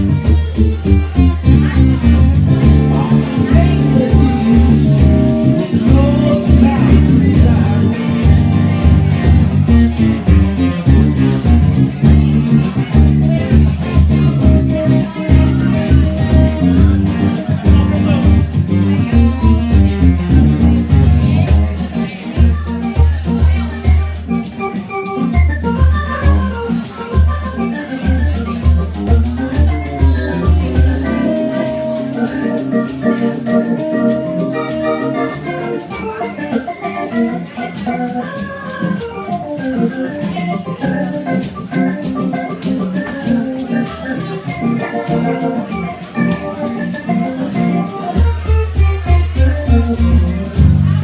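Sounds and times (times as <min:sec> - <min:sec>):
deep bass notes: 0:00.0 - 0:23.6, 0:28.2 - 0:35.0, 0:49.1 - 0:51.0
drums with cymbal ticks: 0:00.0 - 0:51.0
organ chords: 0:00.0 - 0:51.0.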